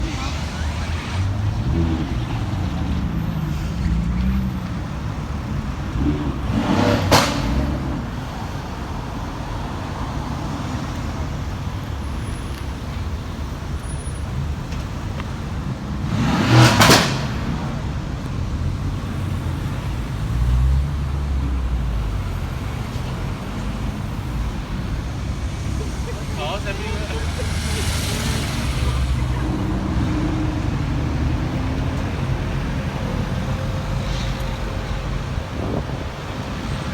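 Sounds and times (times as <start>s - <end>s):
car engine rumbling: 0.0s - 36.9s
road traffic: 0.0s - 36.9s
loud engine bursts: 24.4s - 35.6s.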